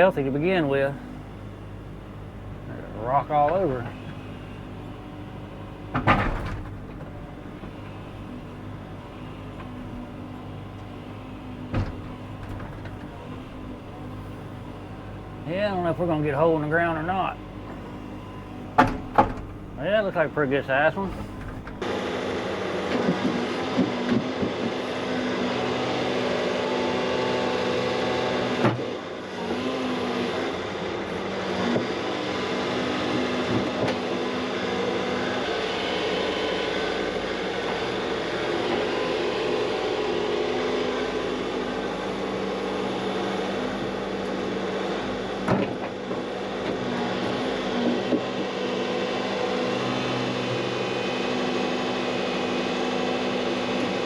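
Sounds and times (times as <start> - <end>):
excavator engine and hydraulics: 0.0 - 54.0
sharp knocks: 5.9 - 10.9, 11.7 - 14.9, 17.7 - 21.8.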